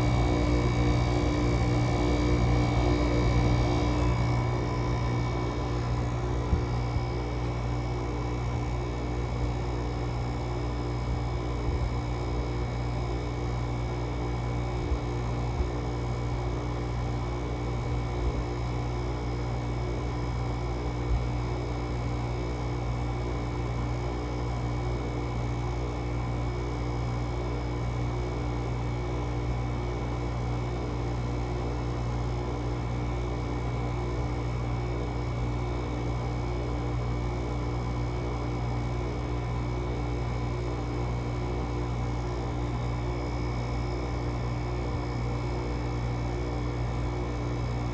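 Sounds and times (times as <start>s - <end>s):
air conditioner humming: 0.0s - 10.2s.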